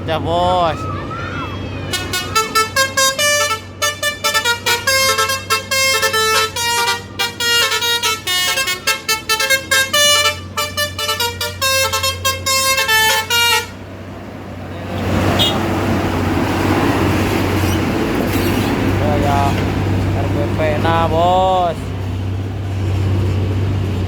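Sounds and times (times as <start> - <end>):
truck musical horn playing tune: 1.8 - 13.9, 15.3 - 15.7.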